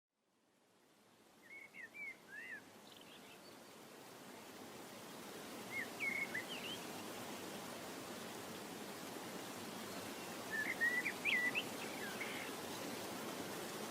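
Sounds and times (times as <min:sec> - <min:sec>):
steady outdoor noise: 0:00.2 - 0:13.9
birds chirping: 0:05.7 - 0:07.0, 0:09.7 - 0:13.1.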